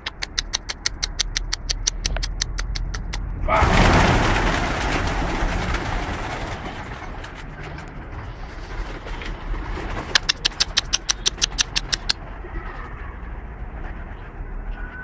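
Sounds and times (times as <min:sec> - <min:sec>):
quick regular clicks: 0:00.0 - 0:03.3, 0:10.0 - 0:12.2
loud rush of noise: 0:03.2 - 0:10.0.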